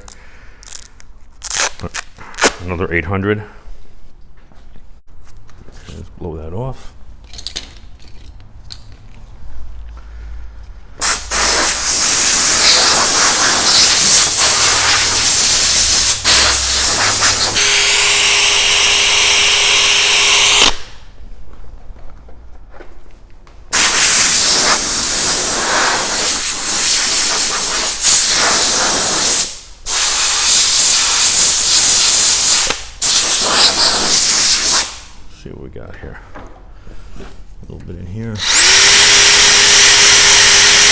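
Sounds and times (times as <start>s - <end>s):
compressed air hissing: 11.0s - 21.0s, 23.7s - 35.2s, 38.4s - 40.9s
drill sanding: 11.2s - 20.9s, 38.4s - 40.9s
motor whine: 17.4s - 20.8s.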